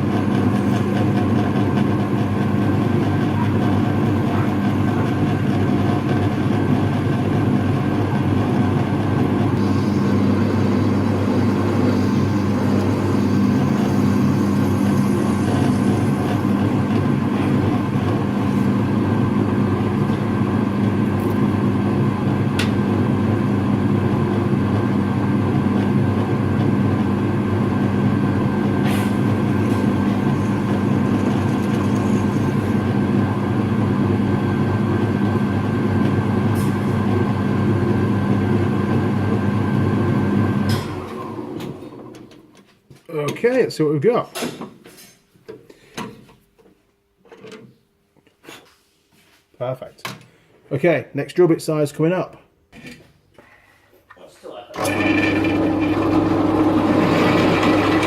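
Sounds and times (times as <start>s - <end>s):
electric drill drilling: 9.6s - 18.5s, 29.1s - 33.0s, 54.8s - 58.0s.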